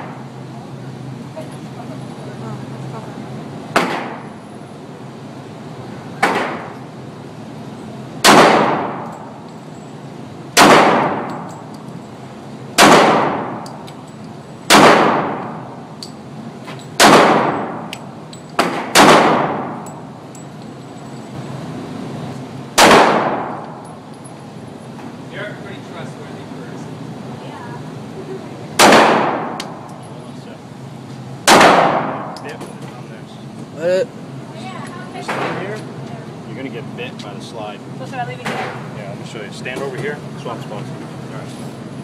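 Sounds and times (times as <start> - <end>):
pistol shots ringing: 8.2 - 9.3, 10.6 - 11.7, 12.8 - 13.7, 14.7 - 15.7, 17.0 - 18.0, 18.6 - 19.8, 22.8 - 23.8, 28.8 - 29.7, 31.4 - 32.4.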